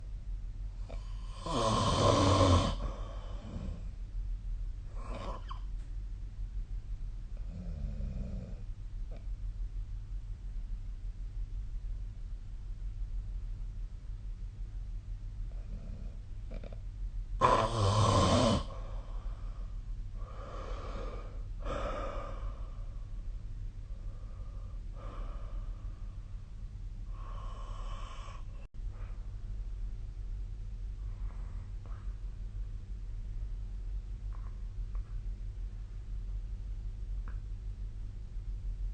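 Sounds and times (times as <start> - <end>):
steady low hum: 0.0 - 38.9
person snoring: 0.9 - 3.9, 17.4 - 19.2, 27.1 - 28.7.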